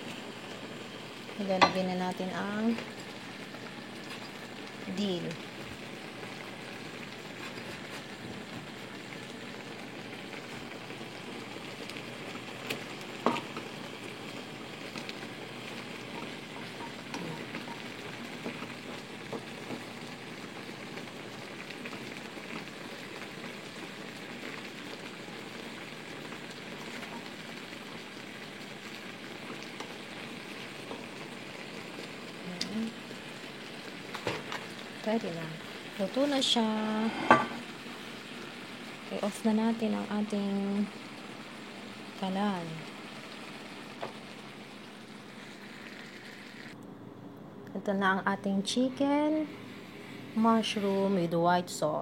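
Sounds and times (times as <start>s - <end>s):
food sizzling in a pan: 0.0s - 46.8s, 48.0s - 52.0s.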